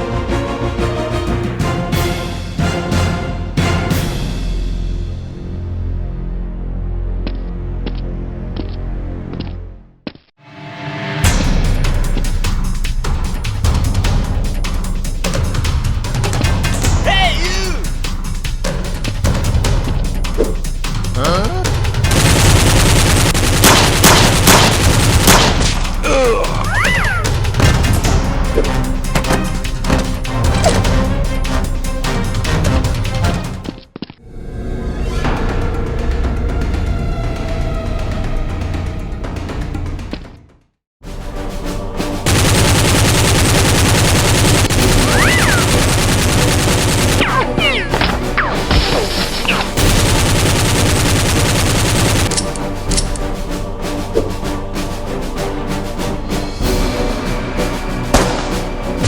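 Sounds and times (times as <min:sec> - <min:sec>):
action music: 0:00.0 - 0:09.2, 0:10.4 - 0:59.0
rapid gunfire sound effects: 0:21.2 - 0:31.1, 0:42.3 - 0:53.0.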